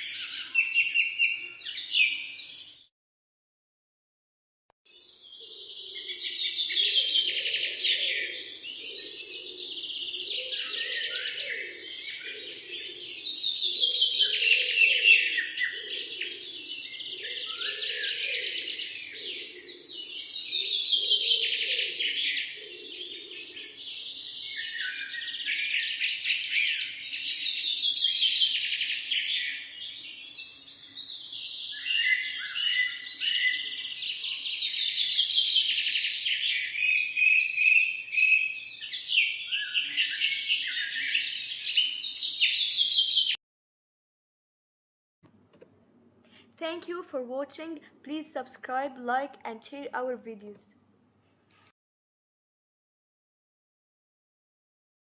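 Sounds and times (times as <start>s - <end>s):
songbirds singing: 0.0s - 2.9s, 4.9s - 43.4s.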